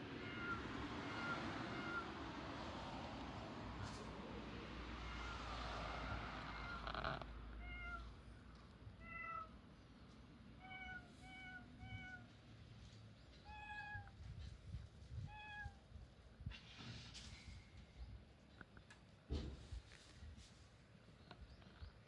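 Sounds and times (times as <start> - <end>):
rustling noise: 11.2 - 15.8, 16.4 - 18.0, 19.3 - 21.8.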